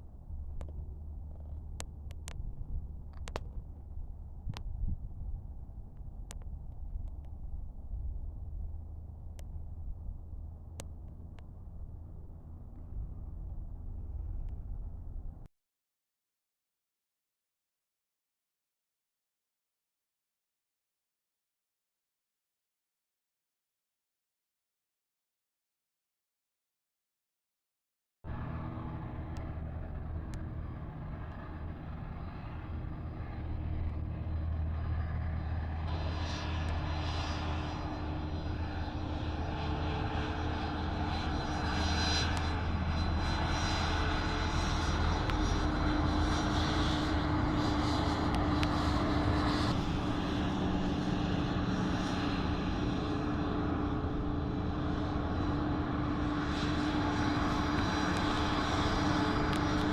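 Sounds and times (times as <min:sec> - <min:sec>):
airplane engine drone: 0:00.0 - 0:15.5, 0:28.3 - 0:59.9.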